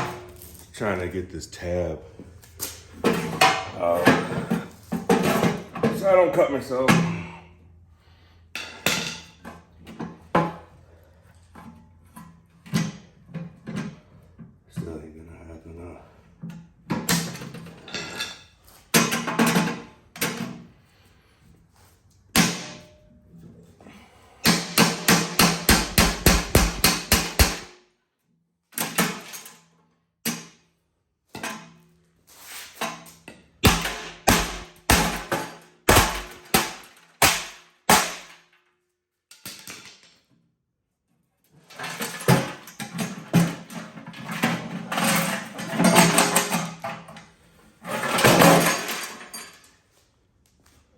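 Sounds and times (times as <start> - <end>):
hammer striking metal safe: 24.4 - 27.7, 33.6 - 38.3.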